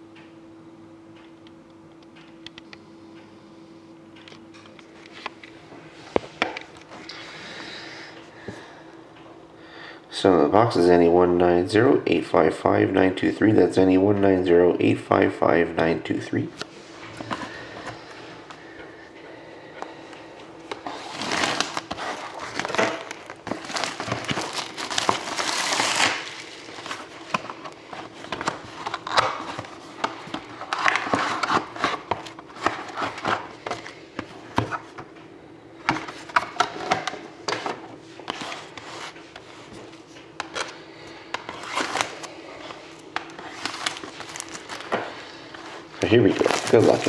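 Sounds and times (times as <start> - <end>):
plastic wrap crinkling and tearing: 20.9 - 33.9, 41.5 - 42.7, 43.4 - 45.0, 45.6 - 47.0.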